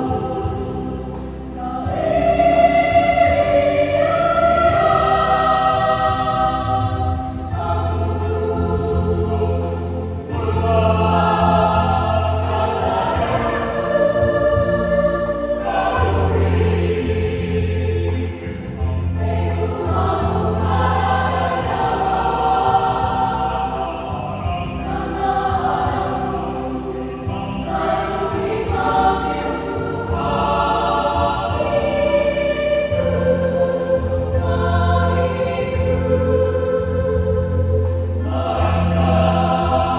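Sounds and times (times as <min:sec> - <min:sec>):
choir singing a hymn: 0:00.0 - 0:39.9.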